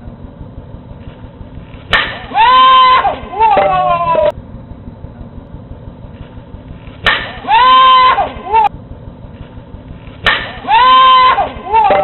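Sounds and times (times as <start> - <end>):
person shouting drawn-out call: 2.3 - 4.3, 7.4 - 8.7, 10.6 - 12.0.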